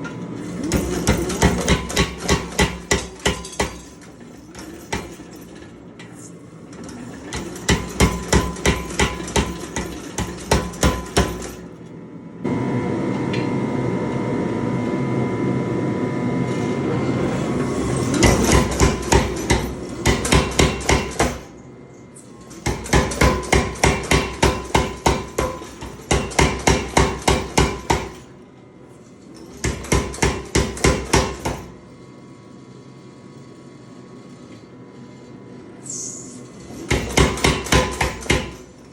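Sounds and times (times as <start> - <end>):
mechanical running noise with hum: 0.0 - 38.9
power hammer striking steel: 0.4 - 5.7, 6.8 - 11.7, 17.8 - 21.6, 22.5 - 28.3, 29.4 - 31.8, 36.8 - 38.8.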